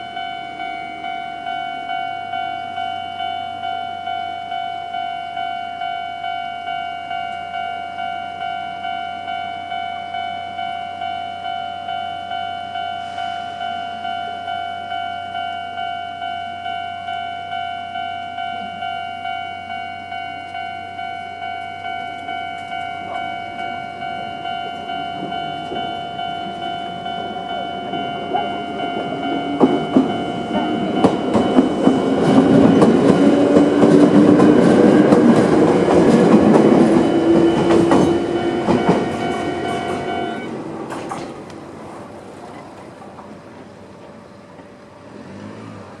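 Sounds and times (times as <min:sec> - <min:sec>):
level-crossing warning bell: 0:00.0 - 0:45.0
train rumble: 0:16.7 - 0:46.0
train wheels clacking on rail joints: 0:20.4 - 0:44.8.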